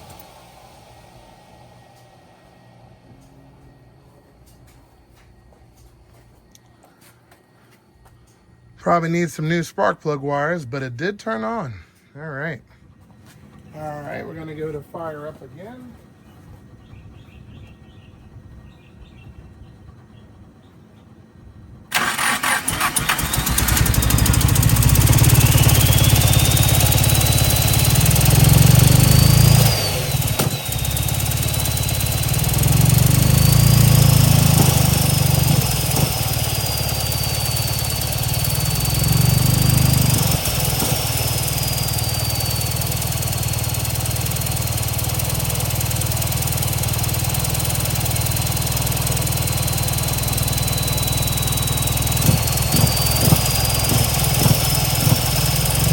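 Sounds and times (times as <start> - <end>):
car engine revving and idling: 0.0 - 2.0, 21.9 - 55.9
high engine whine: 0.0 - 11.8, 21.4 - 55.9.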